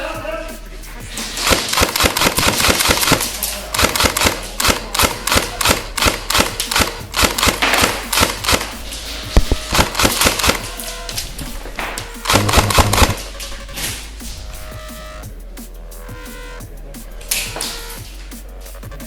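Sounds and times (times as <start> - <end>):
airsoft guns firing bursts: 1.4 - 10.9, 12.2 - 13.3.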